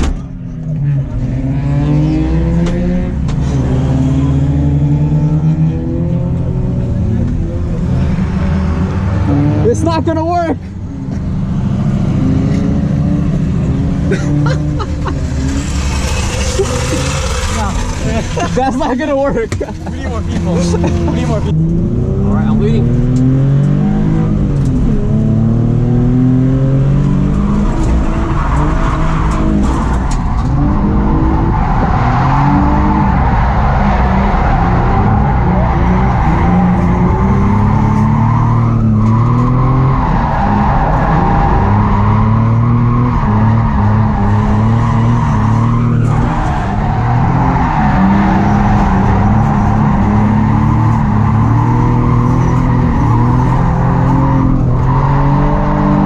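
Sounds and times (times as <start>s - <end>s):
car engine revving hard: 1.2s - 10.5s, 11.2s - 56.0s
tyres squealing: 14.6s - 19.4s.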